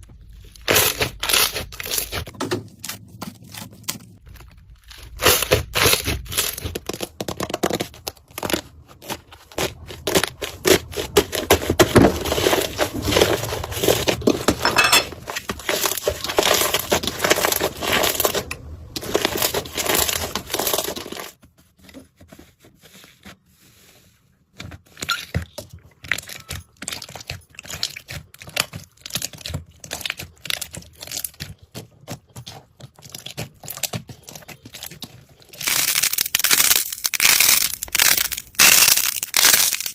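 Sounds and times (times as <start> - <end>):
slime crackling when squeezed: 35.5 - 39.9.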